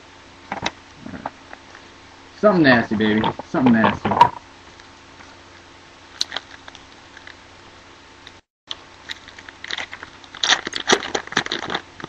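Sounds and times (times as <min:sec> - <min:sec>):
packaging crinkling and rustling: 0:06.2 - 0:07.4, 0:09.0 - 0:12.0.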